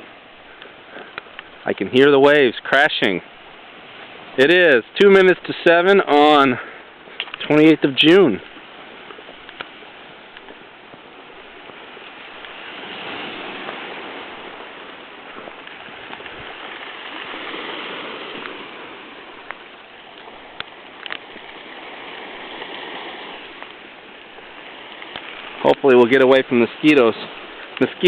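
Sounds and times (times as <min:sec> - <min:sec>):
ocean waves breaking: 0:00.0 - 0:28.0.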